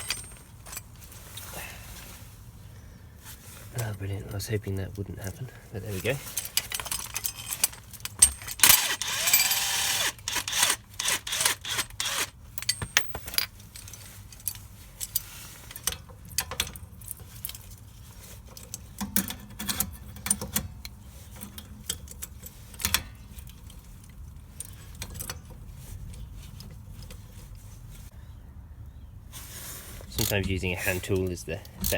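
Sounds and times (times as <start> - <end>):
metal tools clinking: 0.0 - 1.6, 5.9 - 27.7
power tool rattling: 7.1 - 12.4.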